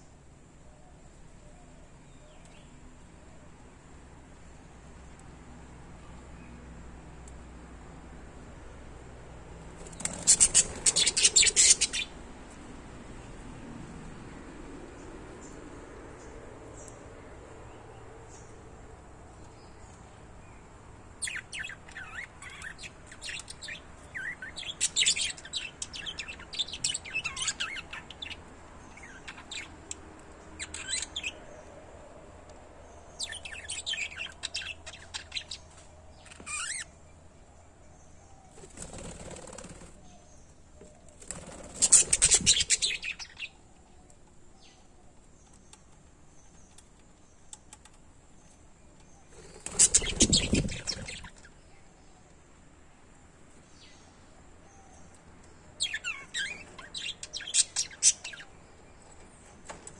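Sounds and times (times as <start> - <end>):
parrots chirping: 9.9 - 12.3, 21.2 - 31.5, 33.2 - 37.0, 41.7 - 43.6, 49.4 - 51.6, 55.8 - 58.7.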